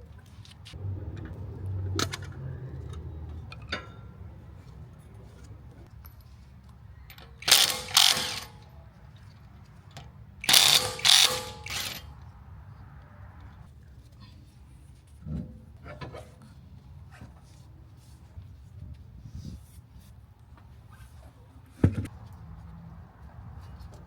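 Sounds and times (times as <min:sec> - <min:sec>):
ratchet wrench clicking: 0:07.1 - 0:08.6, 0:10.4 - 0:12.1.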